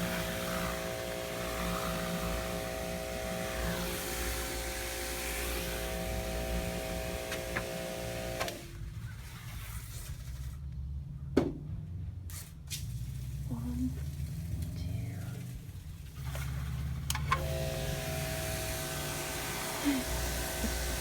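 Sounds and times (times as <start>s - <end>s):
water spraying hiss: 0.0s - 8.6s, 17.5s - 21.0s
pressure washer motor hum: 0.0s - 8.8s, 15.9s - 21.0s.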